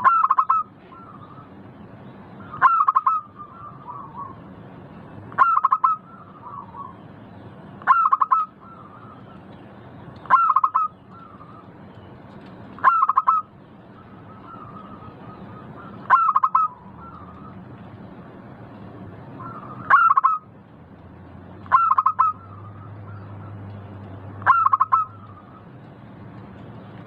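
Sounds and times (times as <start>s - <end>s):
dove cooing: 0.0s - 1.5s, 2.4s - 4.4s, 5.4s - 7.0s, 7.9s - 9.2s, 10.3s - 11.6s, 12.8s - 17.6s, 21.7s - 23.5s, 24.4s - 25.6s.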